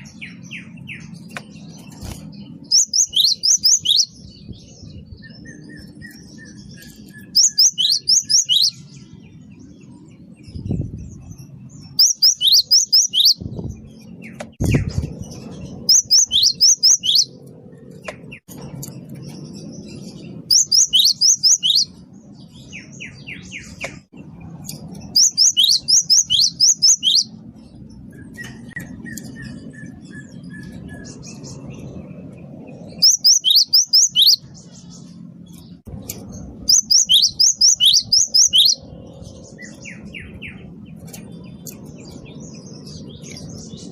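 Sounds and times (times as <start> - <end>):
bird singing high notes: 36.6 - 38.8.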